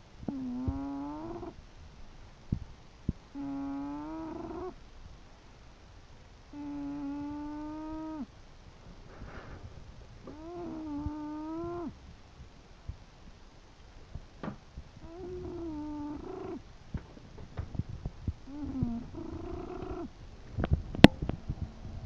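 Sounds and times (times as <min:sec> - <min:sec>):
dog snoring: 0:00.3 - 0:01.6, 0:03.3 - 0:04.8, 0:06.5 - 0:08.3, 0:10.2 - 0:12.0, 0:15.0 - 0:16.6, 0:18.5 - 0:20.1
soft breathy sound: 0:08.9 - 0:12.1, 0:17.8 - 0:20.8.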